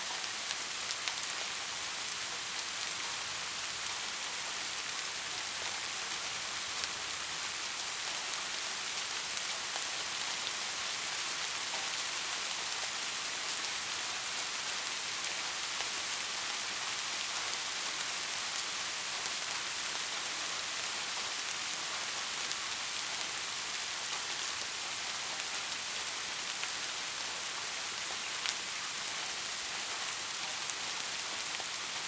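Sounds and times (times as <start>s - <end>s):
steady white noise hiss: 0.0s - 32.0s.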